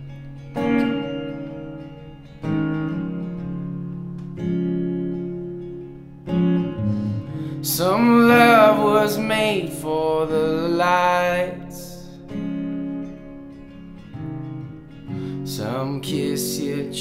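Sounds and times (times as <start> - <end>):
acoustic guitar chords strummed: 0.0 - 17.0.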